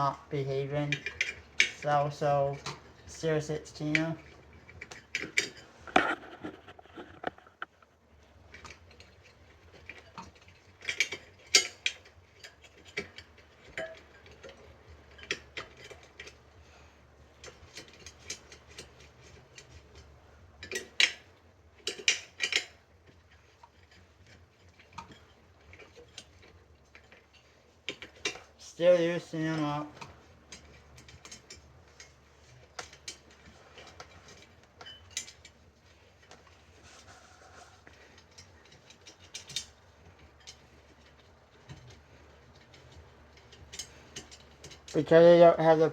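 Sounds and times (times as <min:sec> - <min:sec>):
hand tool clinking on bicycle spokes: 0:08.5 - 0:16.8, 0:17.4 - 0:37.1, 0:37.8 - 0:45.9.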